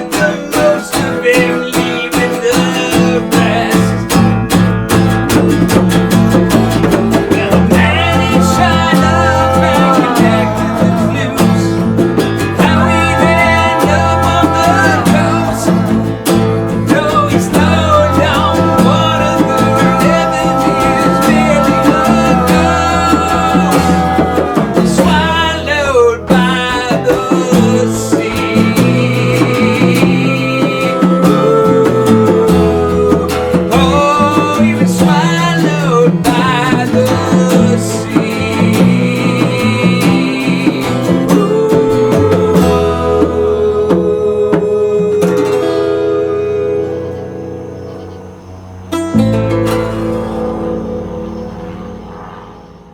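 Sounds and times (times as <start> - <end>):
person singing: 0.0 - 4.4, 6.0 - 47.8
rock band playing: 2.6 - 43.4.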